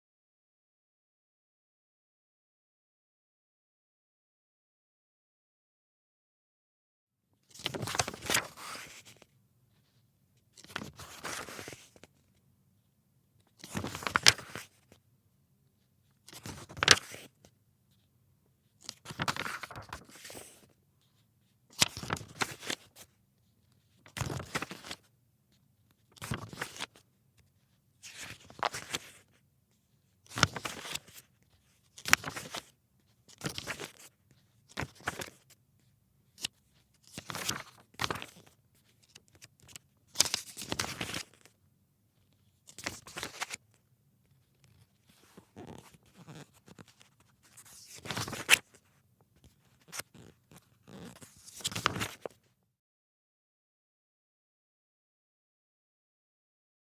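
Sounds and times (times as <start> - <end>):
magazine pages turning: 7.5 - 9.2, 10.6 - 12.1, 13.6 - 14.9, 16.3 - 17.3, 18.8 - 20.7, 21.7 - 23.1, 24.1 - 25.1, 26.2 - 27.0, 28.1 - 29.3, 30.3 - 31.3, 31.9 - 32.7, 33.3 - 34.1, 34.7 - 35.5, 36.5 - 41.5, 42.7 - 43.6, 45.0 - 48.8, 49.4 - 52.4.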